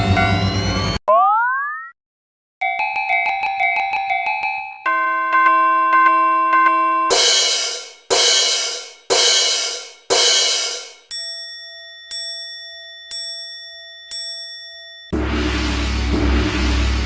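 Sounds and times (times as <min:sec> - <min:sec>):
level crossing bell: 0:02.6 - 0:15.2
loud steady rumbling: 0:15.2 - 0:17.0.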